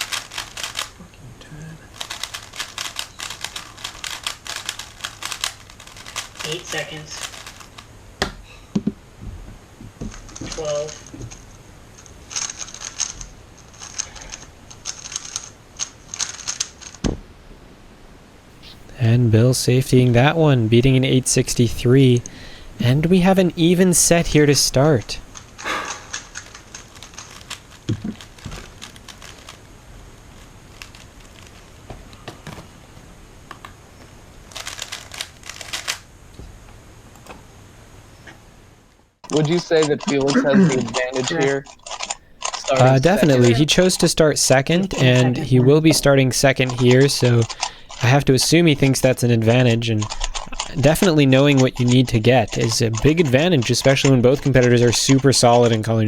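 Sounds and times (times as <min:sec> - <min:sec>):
plastic puzzle cube clicking: 0:02.0 - 0:07.8, 0:46.5 - 0:55.8
rapid clacking: 0:39.2 - 0:56.0.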